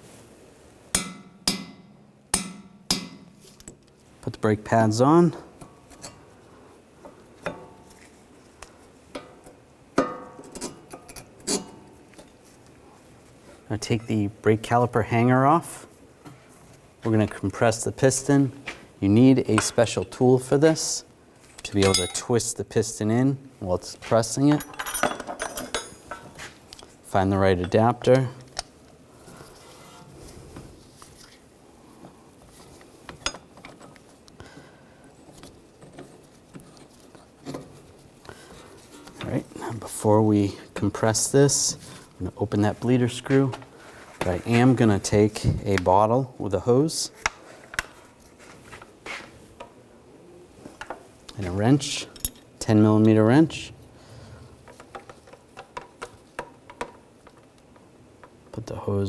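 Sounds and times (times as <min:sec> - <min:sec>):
metallic clinks of brake pads: 0:21.8 - 0:22.3
metal tool pieces clinking: 0:21.8 - 0:22.4, 0:24.5 - 0:26.3.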